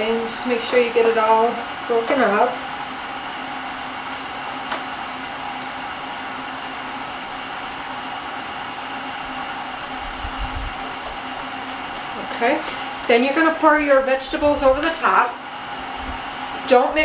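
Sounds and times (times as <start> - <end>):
electric fan whirring: 0.0 - 17.0
constant hum: 9.2 - 17.0.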